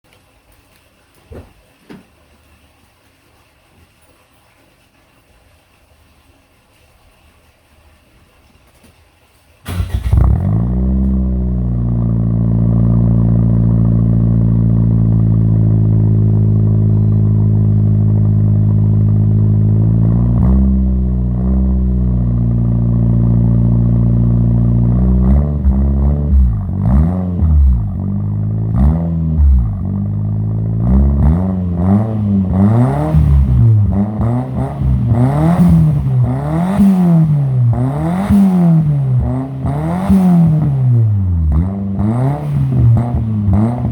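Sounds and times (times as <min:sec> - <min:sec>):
car engine idling and revving: 0:09.7 - 0:43.9.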